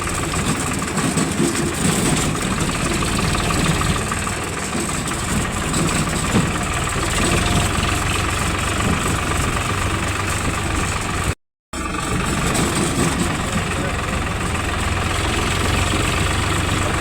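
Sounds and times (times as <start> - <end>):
diesel engine idling: 0.0 - 17.0.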